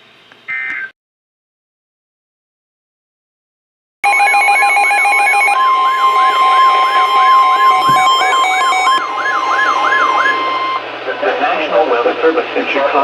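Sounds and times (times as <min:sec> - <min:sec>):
rapid electronic beeping: 0:04.0 - 0:11.3
warbling siren-like tone: 0:04.0 - 0:11.4
steady warning tone: 0:04.0 - 0:12.2.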